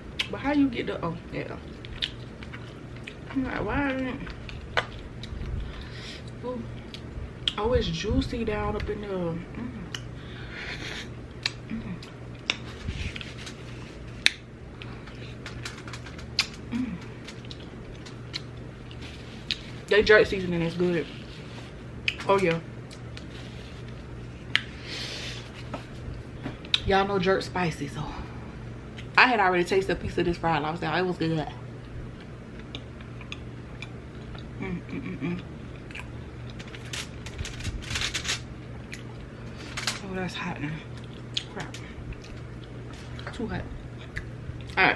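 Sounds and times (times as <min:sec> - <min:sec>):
person chewing food: 0:01.6 - 0:03.3, 0:04.2 - 0:07.6, 0:11.3 - 0:19.9, 0:31.8 - 0:37.0, 0:40.9 - 0:44.8
wet mouth clicks while chewing: 0:01.8 - 0:03.2
person humming low: 0:09.5 - 0:10.0, 0:11.6 - 0:12.2, 0:16.7 - 0:17.2, 0:34.6 - 0:35.5.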